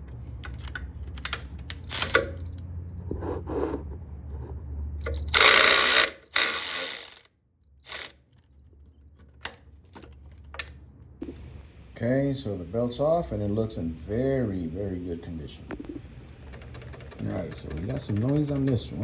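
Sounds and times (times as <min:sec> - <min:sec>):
ratchet ratcheting: 0:05.1 - 0:08.2, 0:16.4 - 0:19.0
faint low hum: 0:07.9 - 0:19.0.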